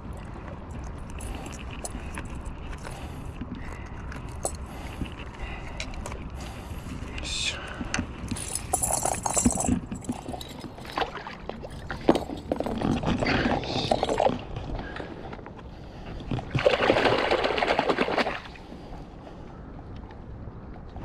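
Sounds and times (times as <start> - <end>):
water sloshing and splashing: 8.0 - 15.0, 16.2 - 18.9.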